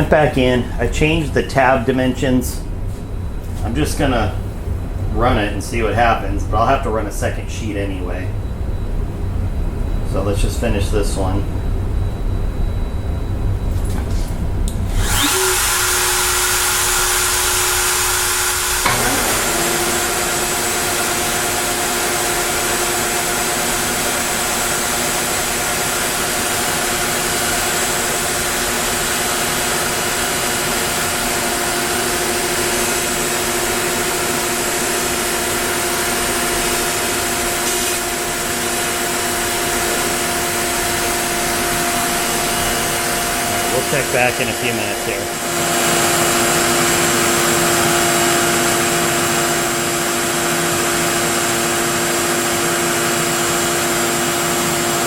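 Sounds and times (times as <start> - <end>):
router spindle whine: 14.7 - 55.0
steady rushing machine noise: 14.9 - 55.0.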